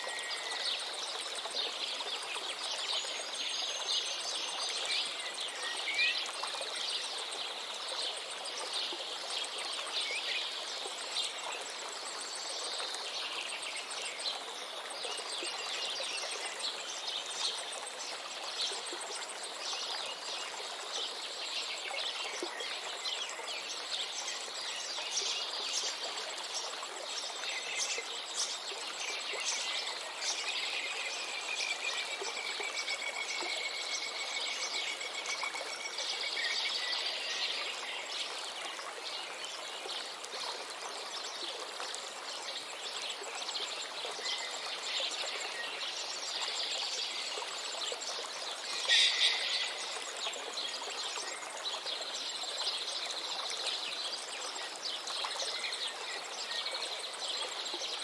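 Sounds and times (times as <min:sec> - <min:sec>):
small birds chirping: 0:48.6 - 0:50.4.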